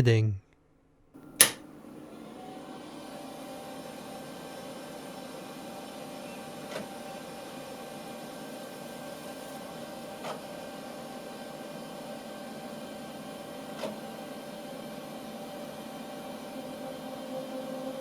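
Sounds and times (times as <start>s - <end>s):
short clicks: 1.2s - 1.7s
computer fans whirring: 1.2s - 18.0s.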